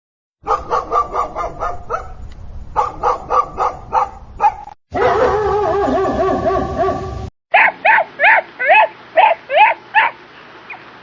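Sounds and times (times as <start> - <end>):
dog barking: 0.4 - 2.2, 2.8 - 10.8
continuous wavering call: 5.0 - 11.0.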